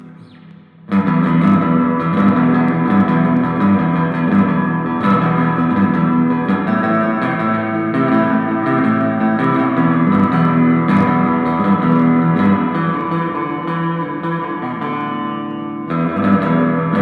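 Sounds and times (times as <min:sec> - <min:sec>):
guitar-led background music: 0:00.0 - 0:17.0.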